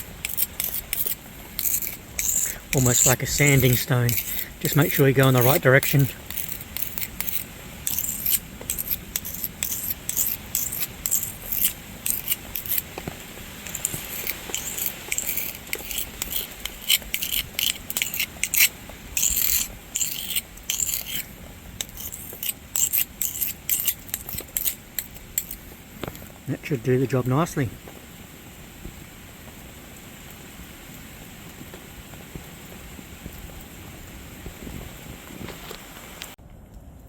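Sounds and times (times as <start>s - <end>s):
knife scraping on concrete: 0.0s - 26.3s.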